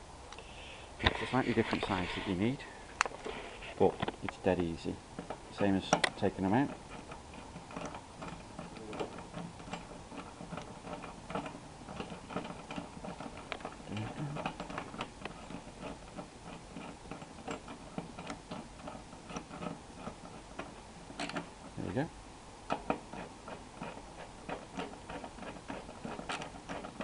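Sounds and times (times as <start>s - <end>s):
hand tool clicking on bolts: 4.6s - 21.5s, 22.7s - 27.0s.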